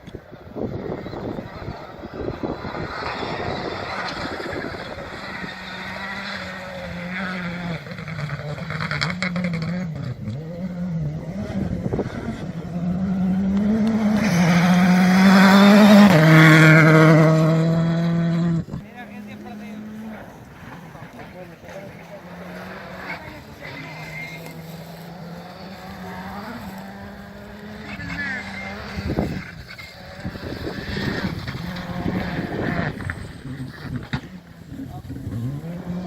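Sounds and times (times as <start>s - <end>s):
rally car engine revving: 0.0s - 36.0s.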